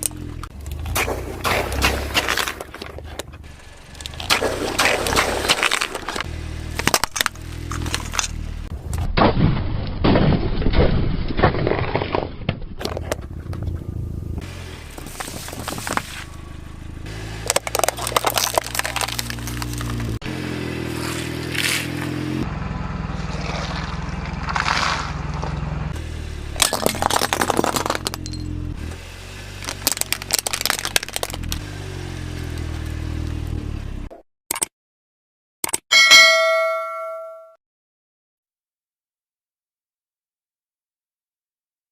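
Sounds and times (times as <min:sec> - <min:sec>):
objects cracking under car tyre: 0:00.0 - 0:13.9, 0:14.9 - 0:16.4, 0:17.3 - 0:20.2, 0:20.9 - 0:22.1, 0:23.2 - 0:25.8, 0:26.6 - 0:28.5, 0:29.5 - 0:31.7.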